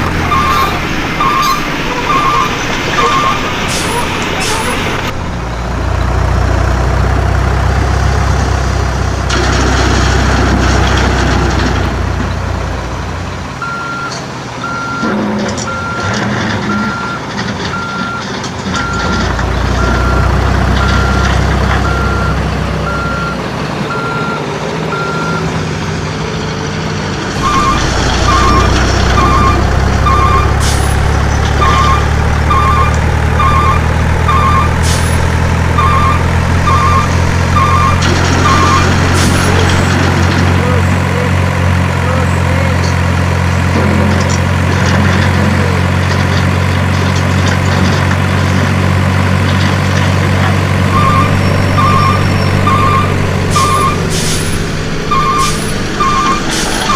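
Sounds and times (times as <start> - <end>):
heavy vehicle engine rumble: 0.0 - 56.9
reversing alarm beeping: 0.1 - 5.2, 13.6 - 25.6, 27.4 - 39.9, 50.9 - 56.9
low double-beep alarm: 0.2 - 4.8, 27.4 - 31.0, 31.6 - 34.8, 35.7 - 39.6, 50.9 - 56.9.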